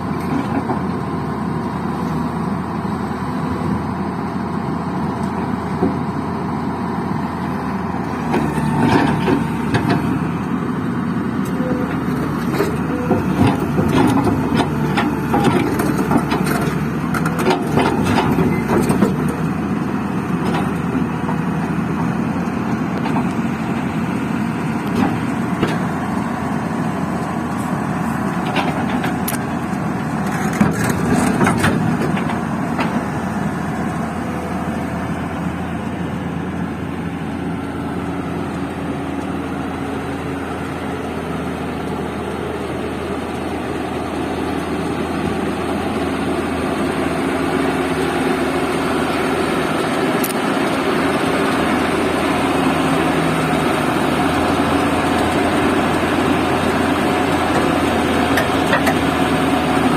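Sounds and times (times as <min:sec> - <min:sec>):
diesel engine running: 0:00.0 - 0:59.9
sharp clanks and knocks: 0:58.4 - 0:59.0.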